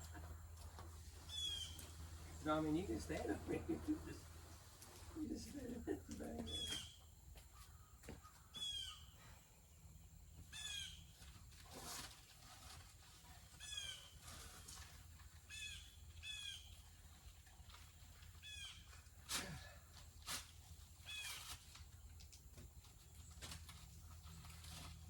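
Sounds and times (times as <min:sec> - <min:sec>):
bird calling: 0:01.2 - 0:04.2, 0:05.2 - 0:09.3, 0:10.4 - 0:11.1, 0:13.6 - 0:14.5, 0:15.5 - 0:16.8.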